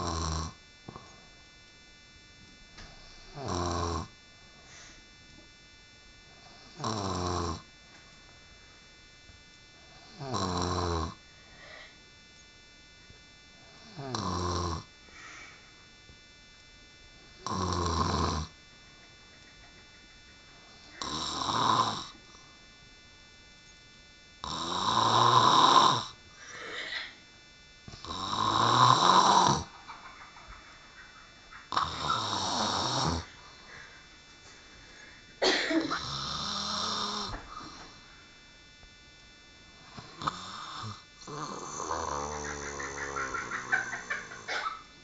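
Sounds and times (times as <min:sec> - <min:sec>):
woman snoring: 0:00.0 - 0:01.2, 0:03.0 - 0:04.2, 0:06.4 - 0:07.7, 0:09.8 - 0:12.0, 0:13.6 - 0:15.6, 0:17.4 - 0:18.6, 0:20.7 - 0:22.2, 0:24.4 - 0:27.2, 0:27.9 - 0:29.7, 0:31.6 - 0:34.0, 0:34.9 - 0:38.0, 0:39.8 - 0:44.8.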